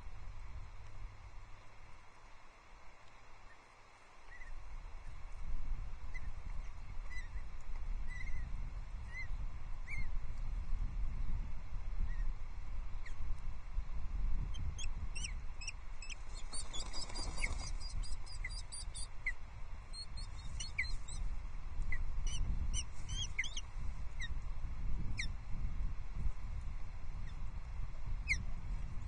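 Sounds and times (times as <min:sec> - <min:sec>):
wind noise rumble: 0:04.6 - 0:29.0
bird whistled calls: 0:15.2 - 0:19.1, 0:19.9 - 0:21.2, 0:22.3 - 0:23.6.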